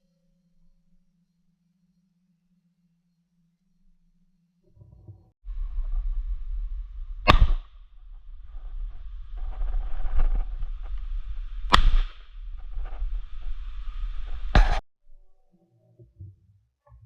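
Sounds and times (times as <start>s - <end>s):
steady low rumble: 4.9s - 14.8s
shotgun shots: 7.3s - 7.7s, 11.7s - 12.2s.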